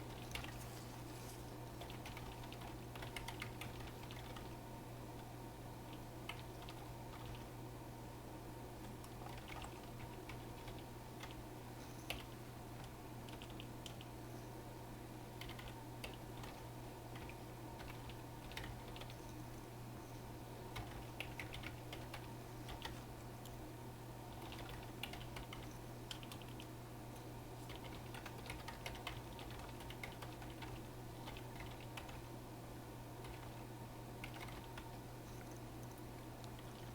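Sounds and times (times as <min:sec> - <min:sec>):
keyboard typing: 0:00.1 - 0:00.7, 0:01.8 - 0:04.6, 0:05.9 - 0:07.5, 0:09.0 - 0:11.4, 0:12.0 - 0:14.1, 0:15.4 - 0:19.4, 0:20.7 - 0:23.6, 0:24.3 - 0:26.7, 0:27.6 - 0:32.3, 0:33.2 - 0:33.6, 0:34.2 - 0:36.9.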